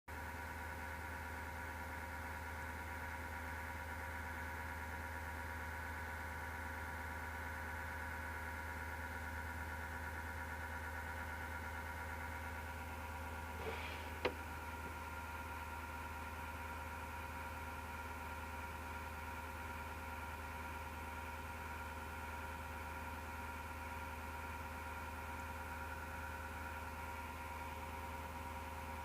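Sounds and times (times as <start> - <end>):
computer fan whirring hum: 13.3 - 15.4
brief scrape: 13.6 - 14.9.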